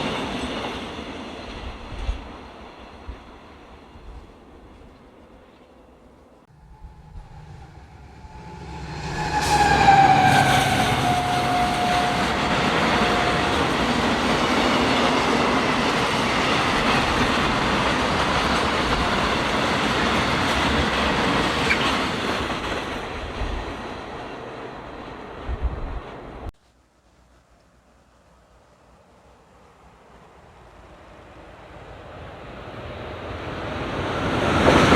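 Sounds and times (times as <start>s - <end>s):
train passing: 0.0s - 26.5s, 27.1s - 34.9s
wheels rushing on rails: 0.0s - 26.5s.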